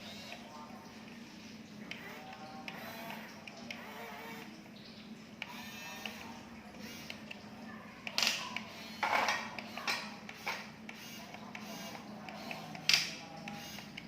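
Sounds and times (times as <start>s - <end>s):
small electric toy motor whirring: 0.0s - 0.4s, 1.9s - 4.5s, 5.4s - 7.4s, 8.0s - 14.0s.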